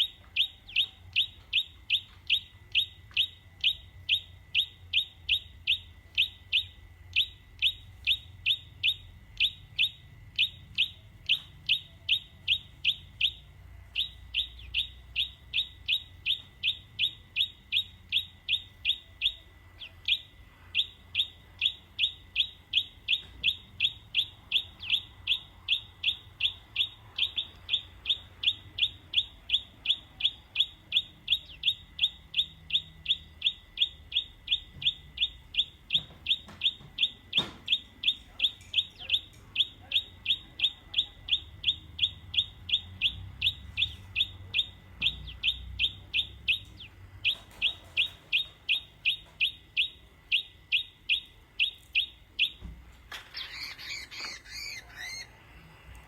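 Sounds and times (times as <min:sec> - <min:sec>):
bird chirping: 0:00.0 - 0:55.4.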